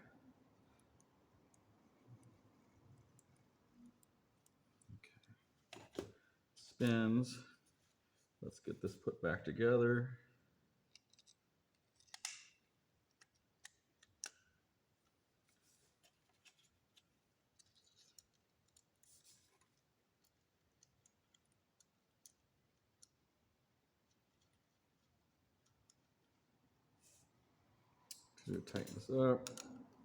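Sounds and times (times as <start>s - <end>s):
small reel parts clicking: 10.9s - 14.5s.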